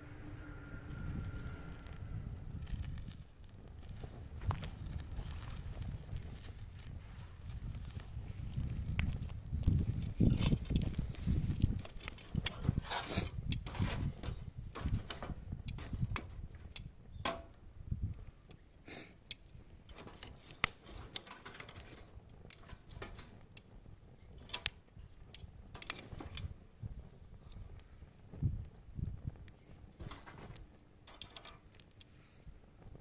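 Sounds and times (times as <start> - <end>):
bonfire crackling: 0.0 - 33.0.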